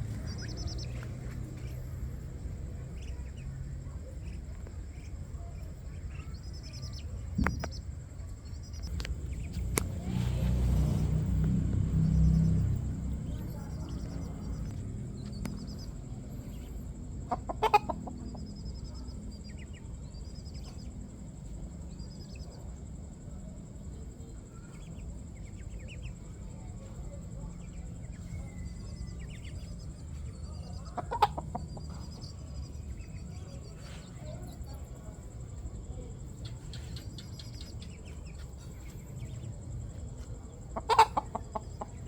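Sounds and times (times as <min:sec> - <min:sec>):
faint high chirps: 0:00.0 - 0:10.4, 0:11.8 - 0:42.0
low rumble: 0:00.0 - 0:40.8
hen clucking: 0:16.5 - 0:19.0, 0:28.0 - 0:34.4, 0:40.6 - 0:42.0.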